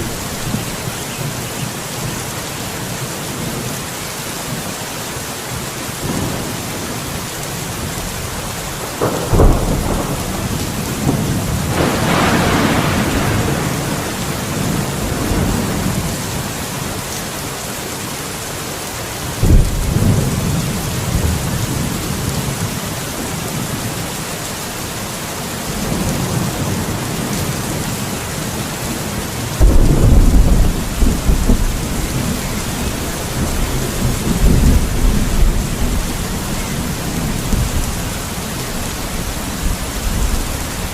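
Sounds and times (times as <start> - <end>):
steady rain: 0.0 - 40.9
thunder claps and rumbles: 6.0 - 17.1, 19.3 - 24.0, 25.7 - 40.9.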